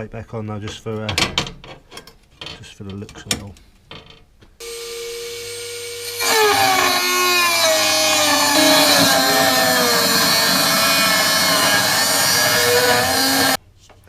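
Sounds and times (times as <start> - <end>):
rotary tool cutting sheet metal: 5.5 - 13.6.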